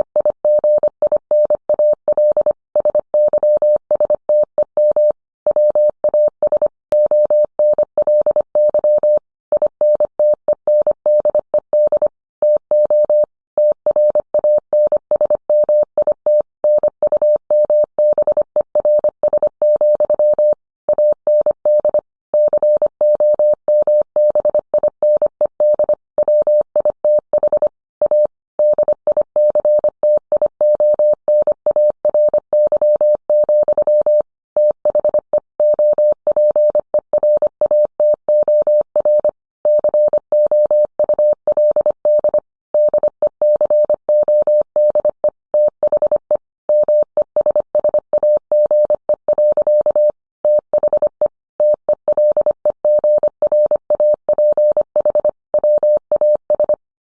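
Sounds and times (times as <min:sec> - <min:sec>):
morse code tone: 0:30.9 - 0:56.8.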